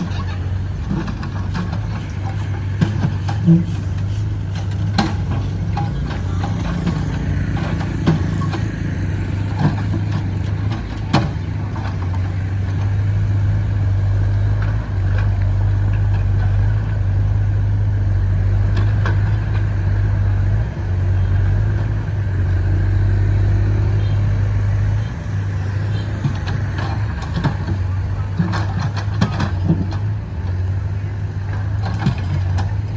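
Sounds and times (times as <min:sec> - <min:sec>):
excavator diesel engine running: 0:00.0 - 0:32.9.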